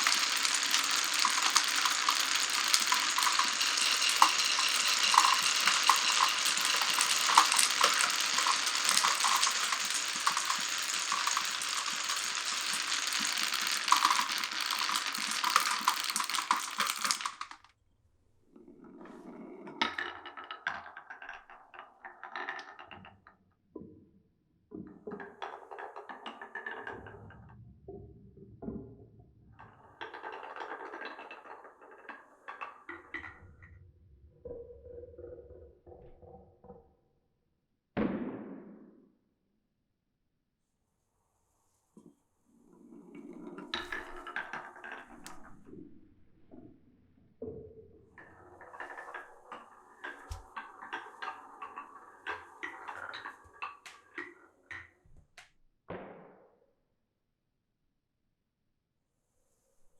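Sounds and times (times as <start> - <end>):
marbles rolling on wooden tracks: 0.0 - 17.7, 19.0 - 23.4, 24.8 - 27.4, 29.6 - 33.4, 43.1 - 45.7, 48.2 - 55.0.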